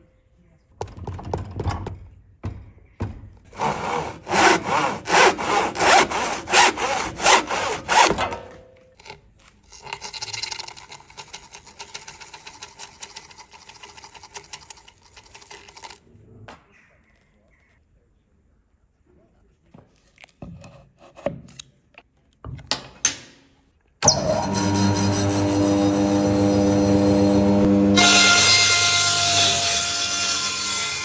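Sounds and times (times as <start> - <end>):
hand saw cutting wood: 3.5 - 8.6, 24.0 - 31.0.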